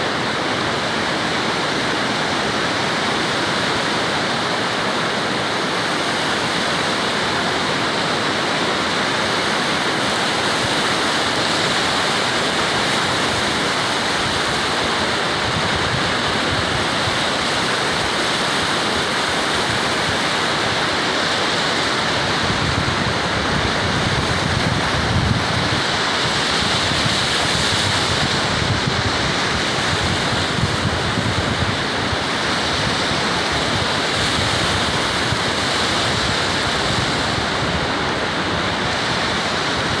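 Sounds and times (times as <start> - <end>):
ocean surf breaking: 0.0 - 40.0
wind buffeting microphone: 9.0 - 40.0.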